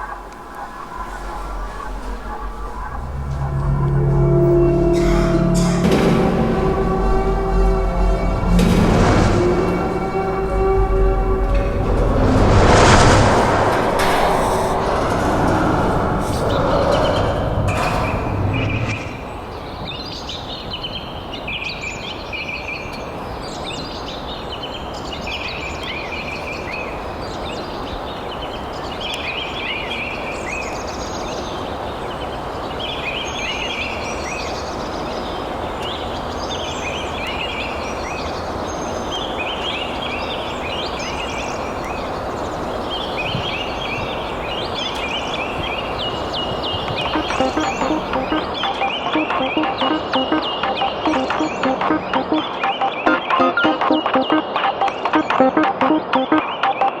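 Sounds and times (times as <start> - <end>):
birds chirping: 0.0 - 5.9
steady rushing background noise: 0.0 - 19.8, 35.6 - 57.0.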